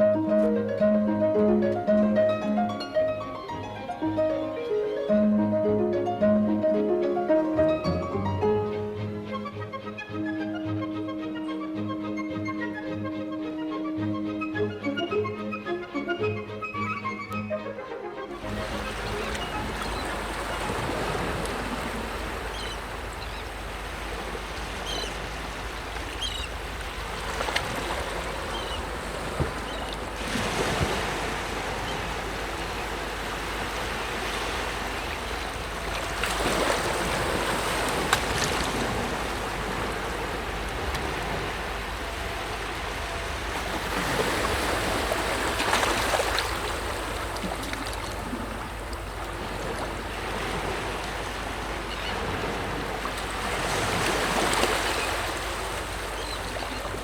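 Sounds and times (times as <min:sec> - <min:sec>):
sea waves breaking on beach: 0:18.2 - 0:57.0.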